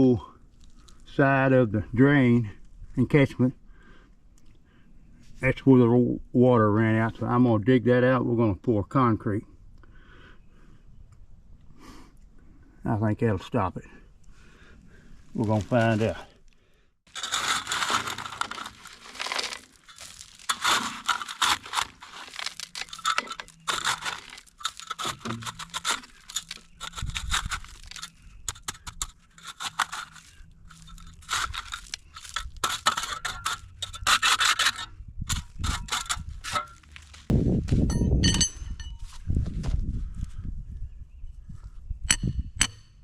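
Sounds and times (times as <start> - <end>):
shovel scraping gravelly soil: 15.2 - 16.3, 17.1 - 37.3.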